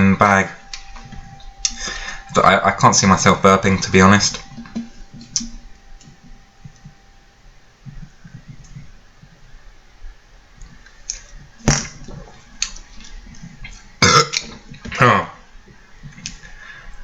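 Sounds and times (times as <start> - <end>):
soft low knocks: 0.5 - 10.8.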